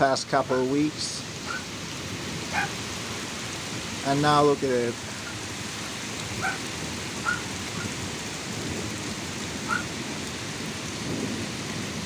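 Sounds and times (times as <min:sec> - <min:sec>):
heavy rain falling: 0:00.0 - 0:12.0
low thunder rumble: 0:00.0 - 0:12.0.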